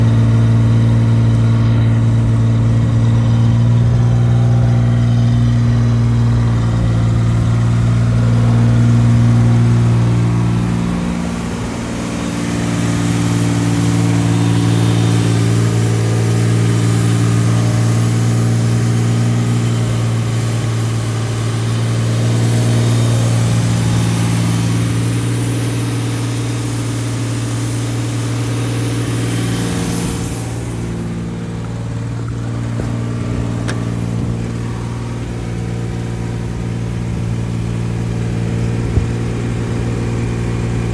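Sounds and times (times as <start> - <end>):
car engine running: 0.0 - 40.9.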